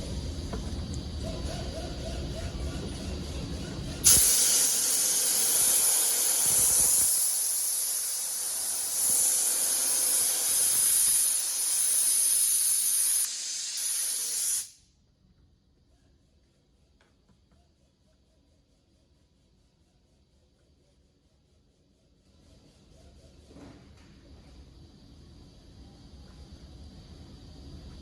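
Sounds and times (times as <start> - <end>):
steady spraying hiss: 4.0 - 14.8.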